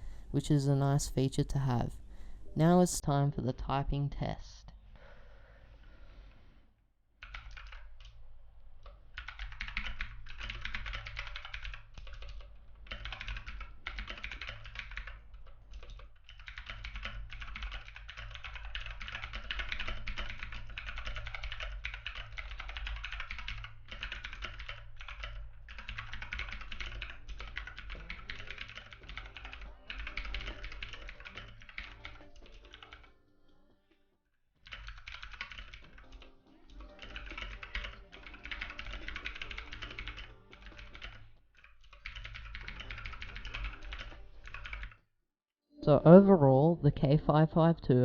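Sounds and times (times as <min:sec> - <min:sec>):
mechanical keyboard typing: 0:07.2 - 0:08.2, 0:08.8 - 0:33.1, 0:34.6 - 0:45.0.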